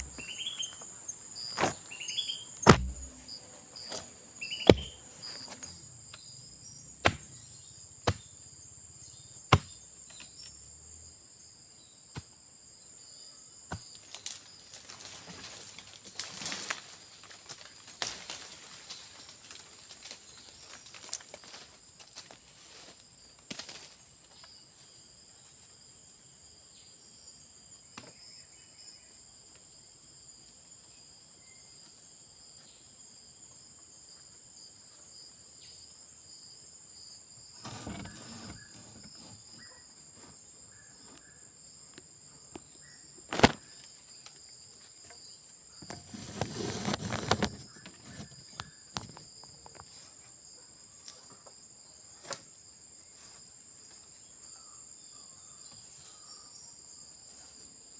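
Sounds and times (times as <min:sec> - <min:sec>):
rustling: 0:00.0 - 0:00.5, 0:02.6 - 0:05.6, 0:37.6 - 0:39.5, 0:45.9 - 0:48.4
crickets and insects chirring: 0:00.0 - 0:57.9
sharp knock: 0:02.6 - 0:03.3, 0:04.6 - 0:05.0.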